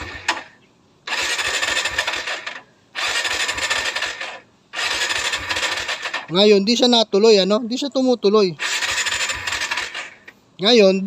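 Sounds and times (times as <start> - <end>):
motorcycle starter cranking: 0.0 - 6.5, 8.6 - 10.3.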